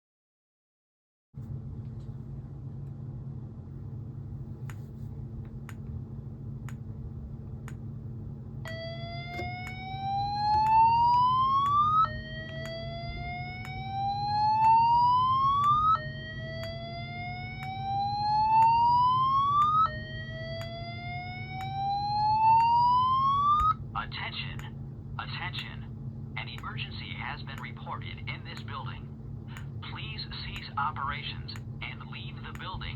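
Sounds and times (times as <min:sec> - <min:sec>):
steady hum: 0:01.4 - 0:32.9
rising whoop siren tone: 0:08.7 - 0:23.8
faint strobe ticks: 0:29.5 - 0:30.8, 0:31.5 - 0:32.9.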